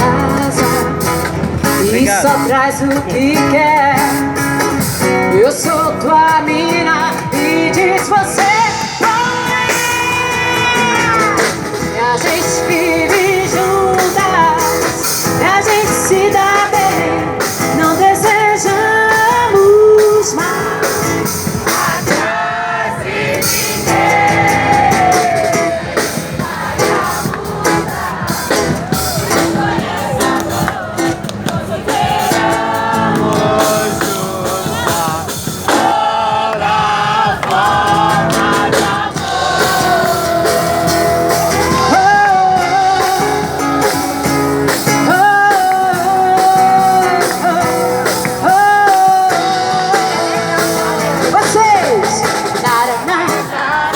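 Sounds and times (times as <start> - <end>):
woman singing wordless vocals: 0.0 - 0.9, 1.8 - 4.3, 5.2 - 21.2, 38.3 - 44.2, 44.9 - 53.9
live band music: 0.0 - 53.9.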